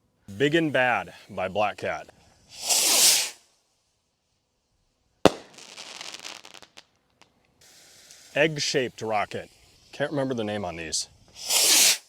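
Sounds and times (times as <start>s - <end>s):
firework rocket whoosh: 2.5s - 3.4s, 5.3s - 6.8s, 11.4s - 12.0s
firework crackling: 2.5s - 3.5s, 5.3s - 9.9s, 11.4s - 12.0s
firework bang: 5.3s - 6.8s.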